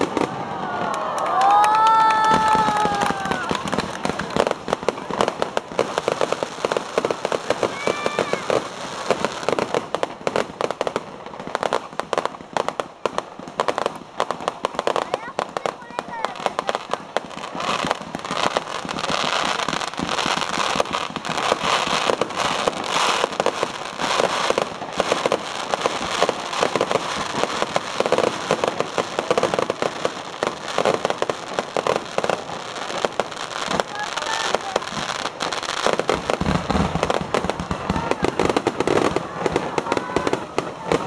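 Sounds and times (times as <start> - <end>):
fireworks crackling and popping: 0.0 - 41.0
murmur of voices: 2.2 - 9.8, 14.2 - 27.7, 31.4 - 41.0.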